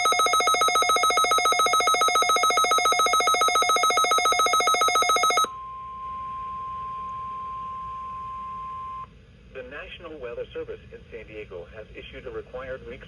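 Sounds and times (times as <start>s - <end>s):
rapidly pulsing electronic alert tone: 0.0s - 5.5s
steady warning alarm tone: 0.0s - 5.5s.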